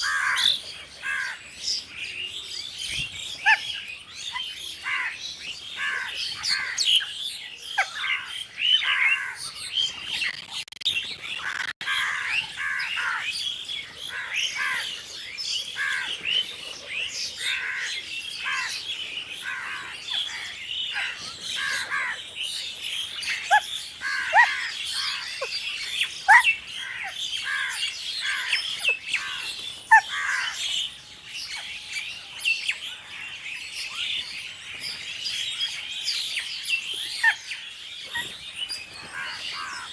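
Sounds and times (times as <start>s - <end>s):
crows cawing: 0.0s - 1.4s, 11.8s - 13.3s, 17.5s - 18.8s, 19.4s - 22.2s, 24.0s - 25.4s, 26.8s - 28.6s, 29.2s - 30.6s, 39.1s - 39.9s.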